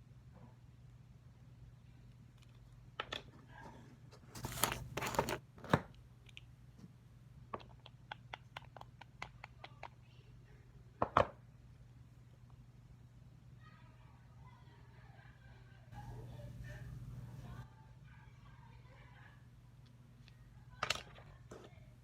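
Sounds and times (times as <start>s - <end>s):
packaging crinkling and tearing: 4.4s - 5.8s.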